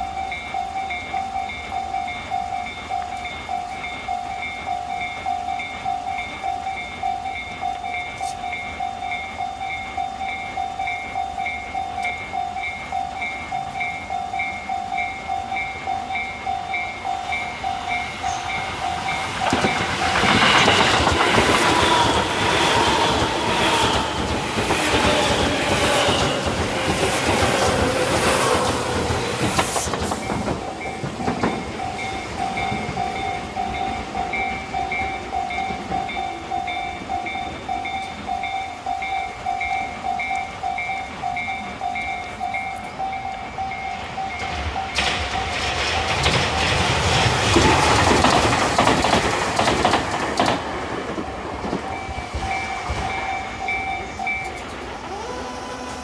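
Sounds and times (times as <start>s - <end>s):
level crossing bell clanging: 0.0s - 22.9s, 26.9s - 46.5s, 51.8s - 55.0s
train wheels clacking: 0.0s - 56.0s
train motor whine: 11.4s - 38.2s, 51.7s - 56.0s.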